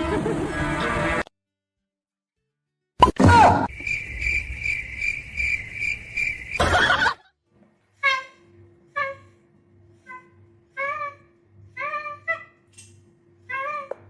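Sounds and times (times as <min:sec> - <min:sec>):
cricket chirping: 0:03.6 - 0:07.1
high-pitched animal calls: 0:10.0 - 0:12.6.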